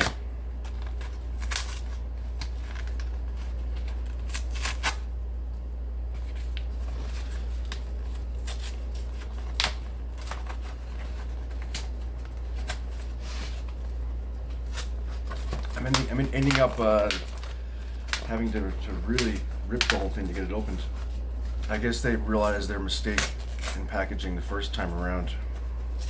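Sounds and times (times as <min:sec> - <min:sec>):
cardboard being torn: 0:00.0 - 0:05.0, 0:14.8 - 0:17.5, 0:18.1 - 0:20.8
steady low hum: 0:00.0 - 0:26.0.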